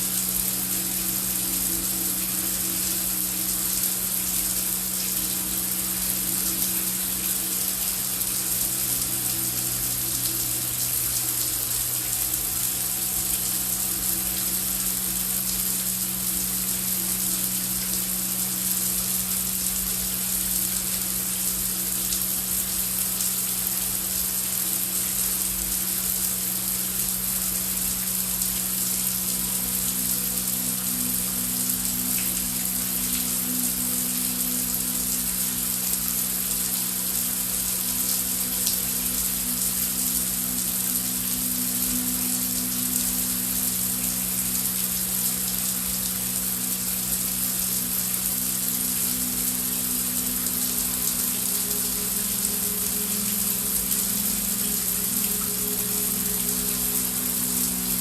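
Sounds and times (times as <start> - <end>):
heavy rain falling: 0.0 - 58.0
low steady drone: 0.0 - 58.0.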